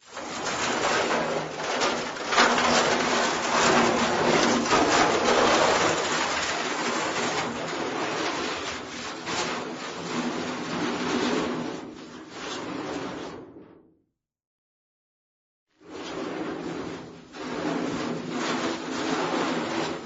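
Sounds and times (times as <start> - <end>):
metal crash with clattering debris: 0.1 - 10.9.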